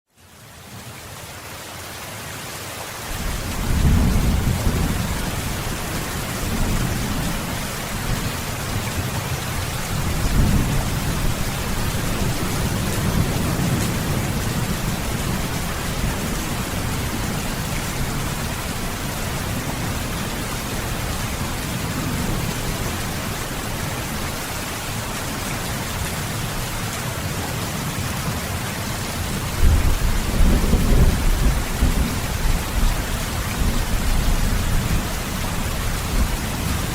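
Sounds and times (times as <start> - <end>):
steady rain: 0.1 - 36.9
thunder rumbling: 3.1 - 23.7, 29.2 - 36.9.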